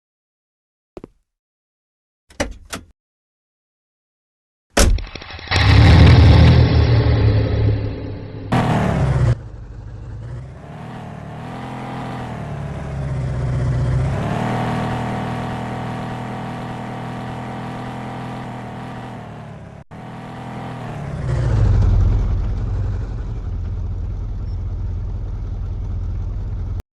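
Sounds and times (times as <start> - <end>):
car engine revving: 5.4 - 24.6
low engine rumble: 5.6 - 10.6, 21.3 - 26.8.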